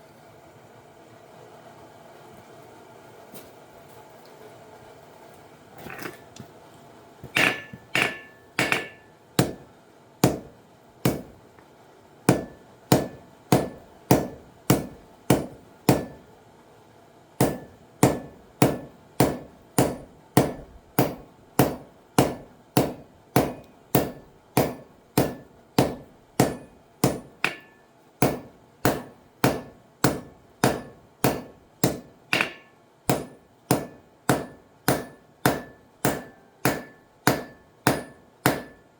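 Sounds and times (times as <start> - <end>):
hammer ringing on anvil: 7.4 - 9.6, 12.3 - 16.2, 17.4 - 38.9.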